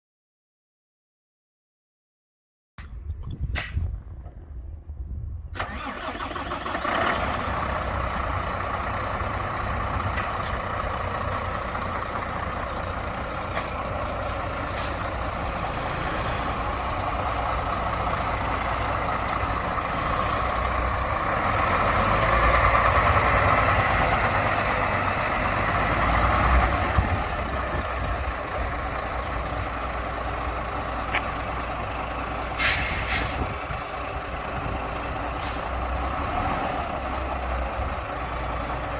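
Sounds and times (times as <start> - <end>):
diesel truck engine running: 5.6 - 38.9
sharp air hisses: 14.7 - 15.2, 31.5 - 34.5.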